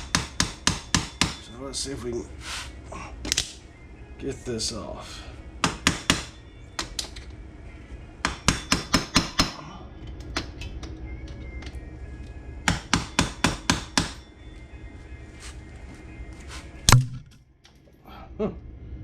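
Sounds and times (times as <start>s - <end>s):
hammer striking metal: 0.0s - 1.5s, 5.6s - 6.4s, 8.2s - 9.6s, 12.7s - 14.3s, 16.9s - 17.4s.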